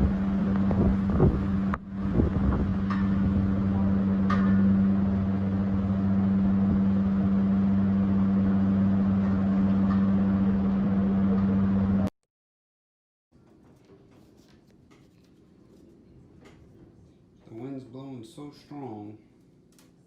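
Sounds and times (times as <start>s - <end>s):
machine hum: 0.0s - 12.1s.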